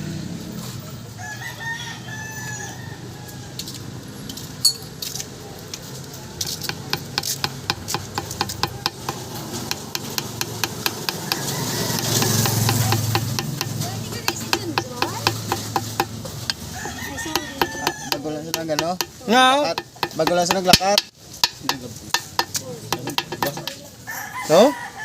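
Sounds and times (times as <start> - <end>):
rooster crowing: 1.1 - 3.8, 9.0 - 20.4, 23.3 - 25.0
rapid regular clicks: 6.5 - 16.7, 17.4 - 23.8.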